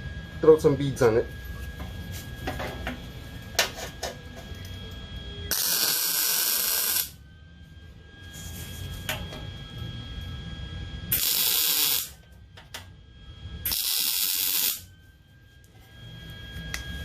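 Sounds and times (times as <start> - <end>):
welding hiss: 5.5 - 7.2, 11.1 - 12.2, 13.7 - 14.9.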